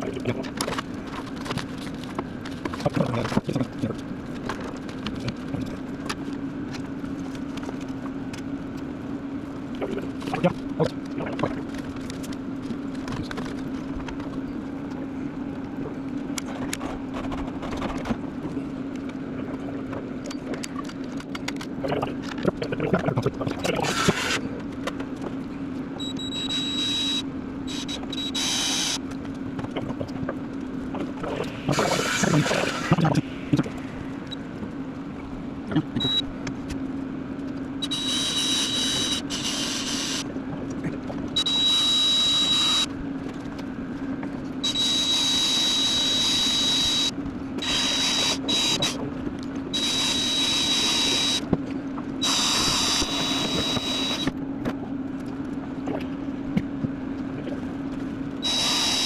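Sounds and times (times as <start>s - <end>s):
constant low hum: 0.0s - 59.0s
electric hand tool whining: 52.2s - 54.3s, 58.4s - 59.0s.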